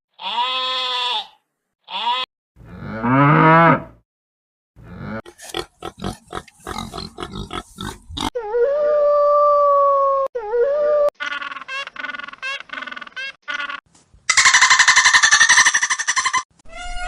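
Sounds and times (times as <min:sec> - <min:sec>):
farm animal calls: 0:04.9 - 0:08.3, 0:11.2 - 0:17.0.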